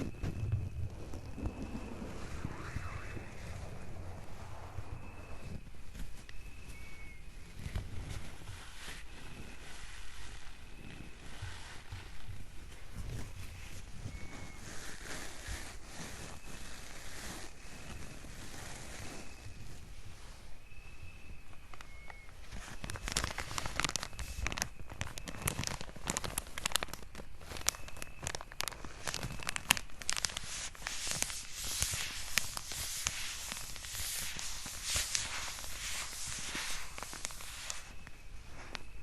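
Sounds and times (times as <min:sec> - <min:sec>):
paper being crumpled: 0:22.6 - 0:38.8.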